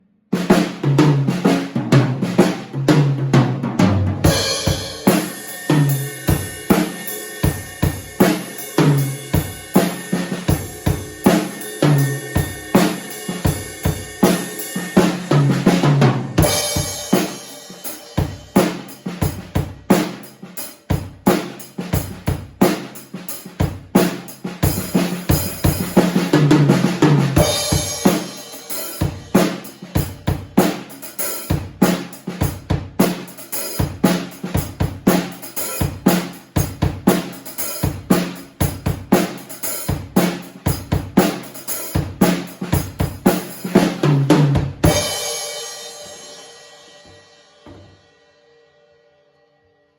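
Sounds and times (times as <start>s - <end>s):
snare drum with rimshots: 0.4s - 46.2s
cymbals: 4.2s - 20.4s, 27.4s - 32.0s.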